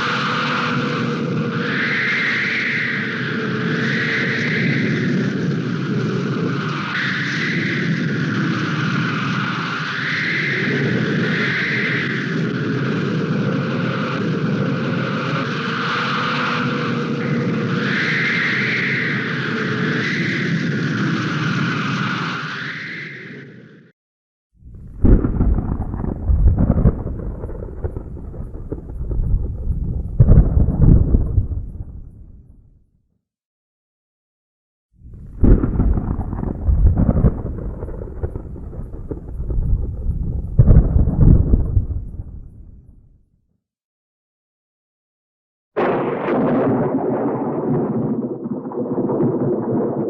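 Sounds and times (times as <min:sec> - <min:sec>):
whistling wind tone: 0:00.0 - 0:23.7, 0:24.7 - 0:32.4, 0:35.1 - 0:42.7
wind blowing in gusts: 0:24.6 - 0:32.4, 0:35.1 - 0:42.9
thunder rumbling: 0:24.6 - 0:32.6, 0:35.1 - 0:43.0, 0:45.8 - 0:50.0
loud thunder crack: 0:24.7 - 0:32.4, 0:35.1 - 0:42.9, 0:45.8 - 0:50.0.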